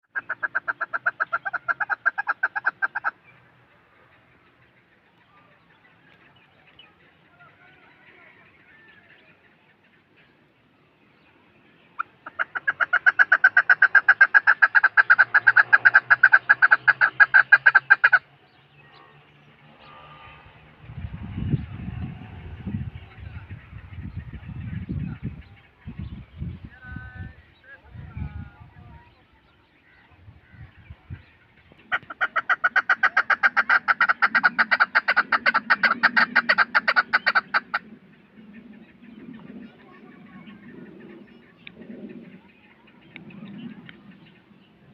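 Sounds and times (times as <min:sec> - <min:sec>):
partridge calling rapid notes: 0:00.1 - 0:03.2, 0:12.0 - 0:18.3, 0:31.1 - 0:37.9.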